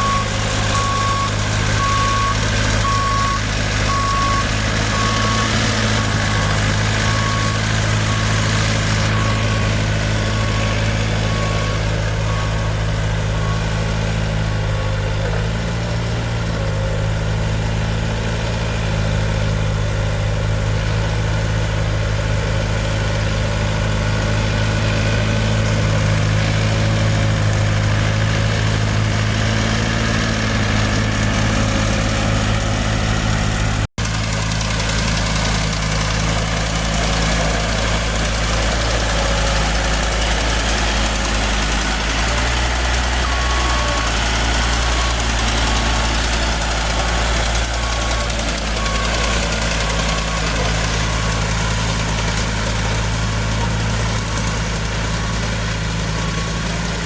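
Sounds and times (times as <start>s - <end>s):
reversing alarm beeping: 0.0s - 15.0s, 34.4s - 57.0s
diesel engine idling: 0.0s - 57.0s.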